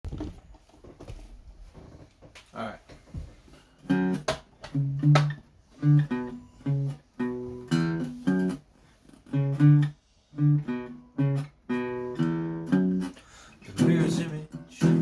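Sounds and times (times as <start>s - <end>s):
acoustic guitar chords: 3.8s - 15.0s.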